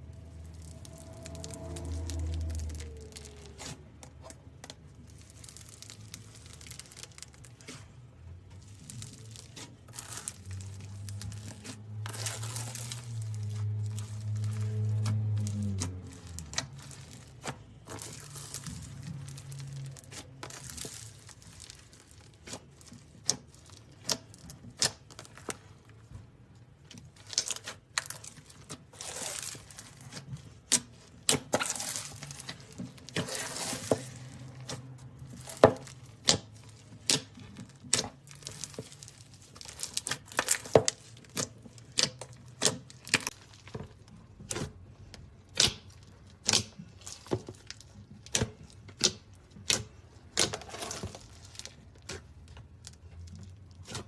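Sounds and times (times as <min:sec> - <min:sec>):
slime crackling and crinkling: 0:00.0 - 0:54.0
slime clicking and popping: 0:34.1 - 0:43.5, 0:45.4 - 0:50.6.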